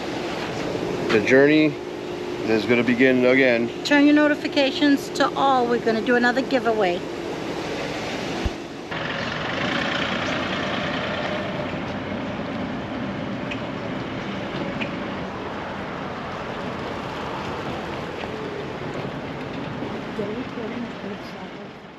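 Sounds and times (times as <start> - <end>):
motor vehicle running: 8.5 - 21.3.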